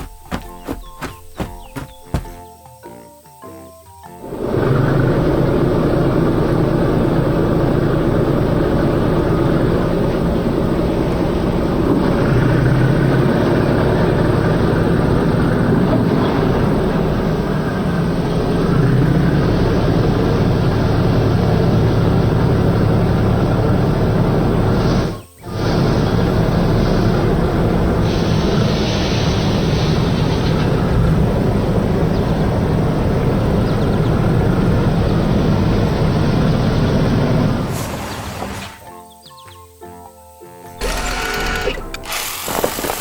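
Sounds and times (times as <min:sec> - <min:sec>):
heavy vehicle engine running: 0:00.0 - 0:02.4, 0:04.2 - 0:38.9, 0:40.7 - 0:43.0.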